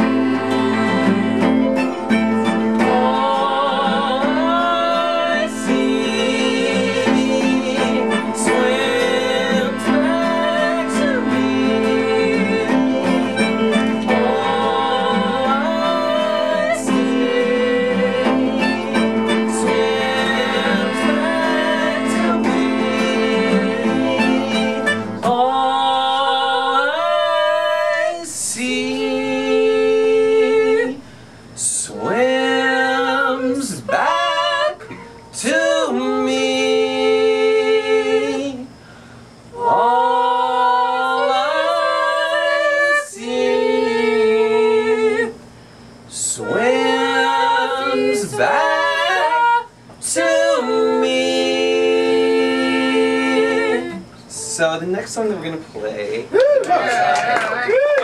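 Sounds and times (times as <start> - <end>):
strummed guitar: 0.0 - 39.8.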